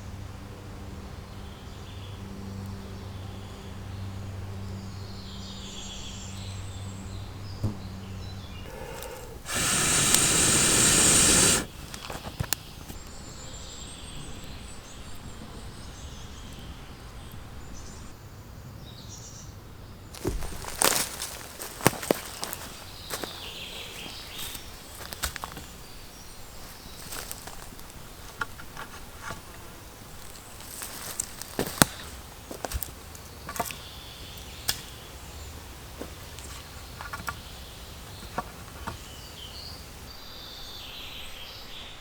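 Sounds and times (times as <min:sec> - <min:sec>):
birds calling: 0:06.9 - 0:13.2
loud rushing hiss: 0:08.7 - 0:12.3
sharp clicks: 0:08.7 - 0:12.6.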